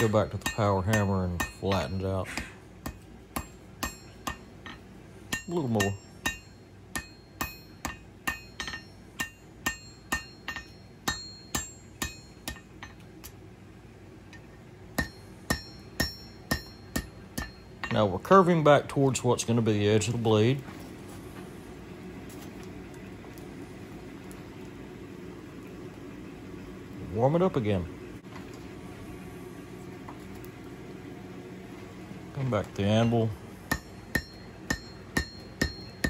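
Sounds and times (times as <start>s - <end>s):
hammer striking steel on anvil: 0.0s - 13.4s, 14.4s - 18.6s, 33.0s - 36.0s
shop equipment humming: 0.0s - 36.0s.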